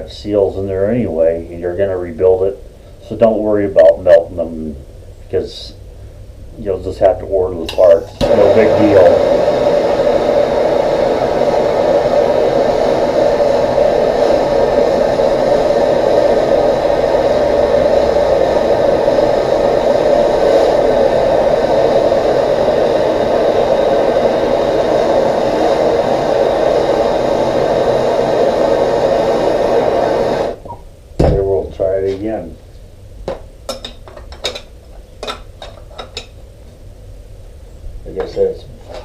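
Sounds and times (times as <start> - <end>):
heat gun blowing: 7.7 - 30.7.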